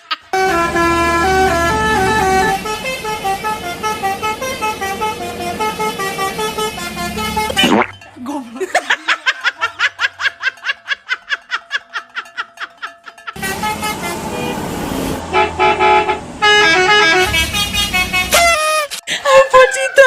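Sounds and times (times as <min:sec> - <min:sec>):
engine and road noise: 0:00.0 - 0:08.7, 0:11.3 - 0:20.0
multi-tone bus horn tune: 0:00.3 - 0:07.9, 0:13.4 - 0:19.0.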